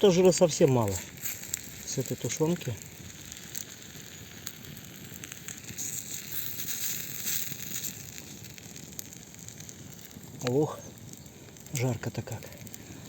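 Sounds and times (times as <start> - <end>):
campfire crackling and popping: 0.0 - 13.0
meat sizzling in a pan: 0.0 - 13.0.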